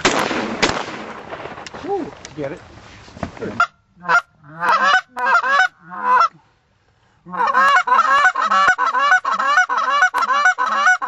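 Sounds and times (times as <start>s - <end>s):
goose honking: 3.6s - 6.3s, 7.3s - 11.0s.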